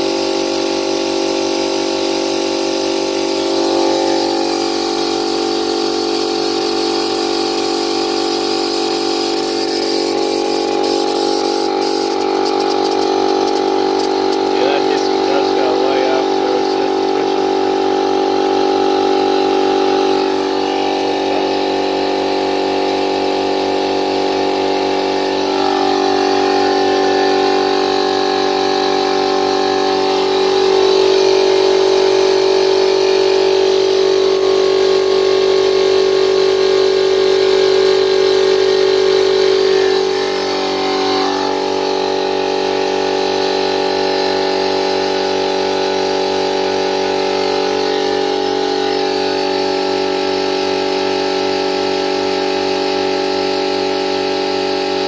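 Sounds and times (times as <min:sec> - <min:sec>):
air compressor running: 0:00.0 - 0:55.0.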